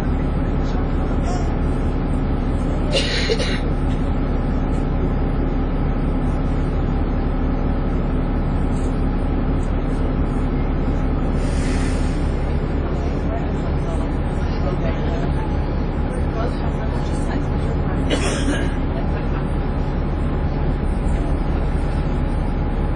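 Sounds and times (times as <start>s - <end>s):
bus engine drone with whine: 0.0s - 22.9s
short hiss: 11.4s - 12.2s.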